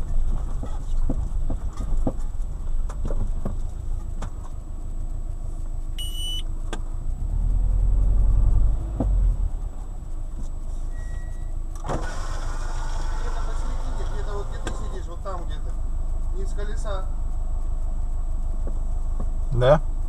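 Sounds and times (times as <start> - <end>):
suspension knocks: 0.0 - 4.6, 8.5 - 10.6
car running gear rumbling: 0.0 - 20.0
brief high tone: 6.0 - 6.4.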